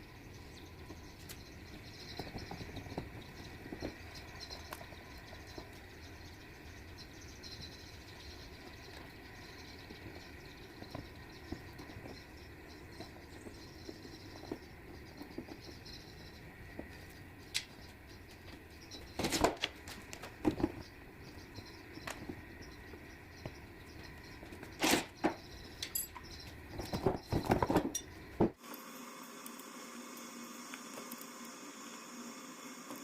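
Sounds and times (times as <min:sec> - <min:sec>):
low background hum: 0:00.0 - 0:28.6.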